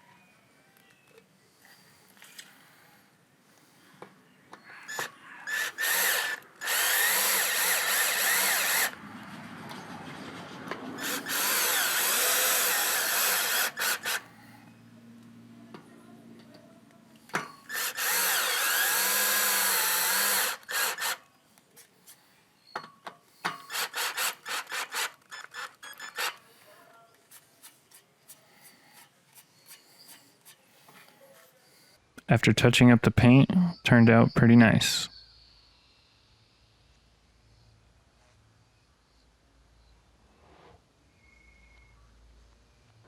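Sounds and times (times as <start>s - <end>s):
cordless drill driving screws: 4.9s - 9.0s, 11.0s - 14.4s, 17.4s - 21.3s, 23.5s - 26.5s.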